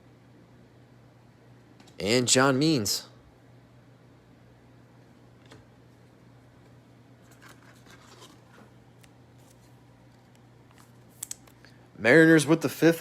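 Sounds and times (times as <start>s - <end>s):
low steady hum: 0.0s - 13.0s
trading cards being handled: 7.2s - 11.8s.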